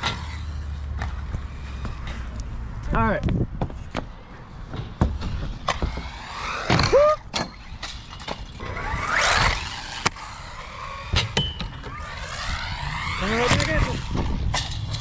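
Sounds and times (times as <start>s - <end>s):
toy car electric motor whining: 5.7s - 15.0s.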